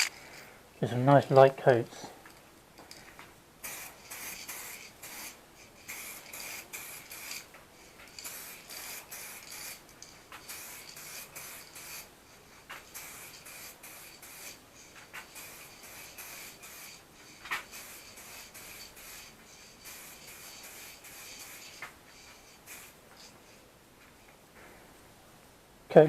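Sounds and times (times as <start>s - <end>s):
aerosol spray can hissing: 3.6s - 23.6s.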